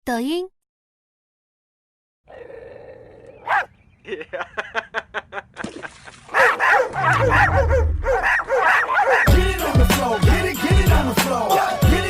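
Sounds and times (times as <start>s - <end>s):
pet animal yapping: 3.4s - 3.7s, 6.4s - 9.3s
low rumble: 7.0s - 8.3s.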